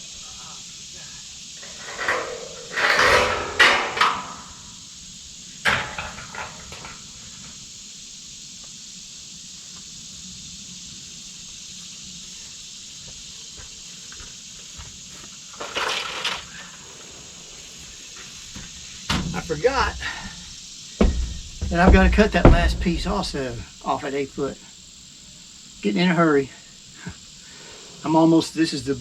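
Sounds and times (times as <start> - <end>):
steady high hiss: 0.0 - 29.0
clattering handling knocks: 1.6 - 4.6, 5.7 - 7.1, 19.1 - 23.6.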